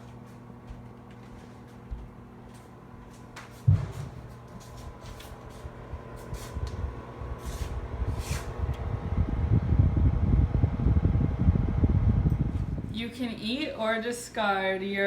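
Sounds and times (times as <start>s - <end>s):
oven fan rushing: 0.0s - 15.0s
knock: 3.7s - 4.1s.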